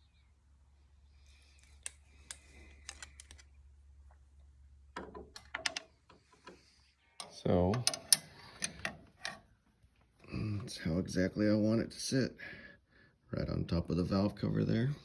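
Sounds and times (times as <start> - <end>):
metal conduit clicks and taps: 5.0 - 6.6, 7.2 - 9.4.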